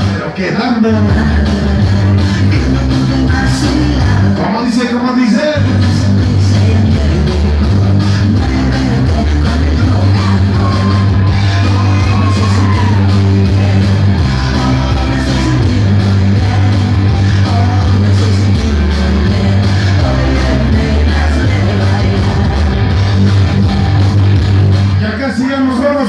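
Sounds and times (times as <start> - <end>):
loud rock music: 0.0 - 26.0
person singing or shouting: 9.0 - 22.8.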